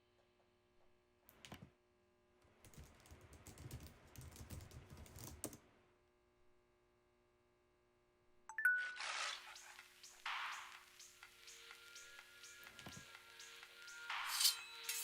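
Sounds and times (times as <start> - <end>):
typing on computer keyboard: 2.6 - 5.6.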